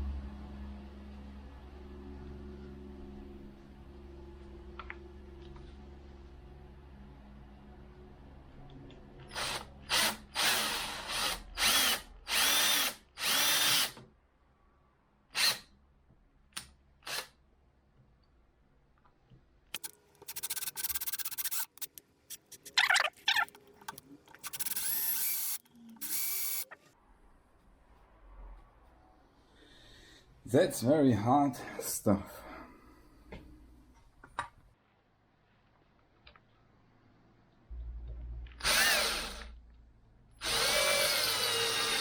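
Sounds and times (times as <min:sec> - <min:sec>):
power drill drilling: 0:09.3 - 0:14.0, 0:19.8 - 0:21.9, 0:24.4 - 0:26.8, 0:38.6 - 0:39.6, 0:40.4 - 0:42.0.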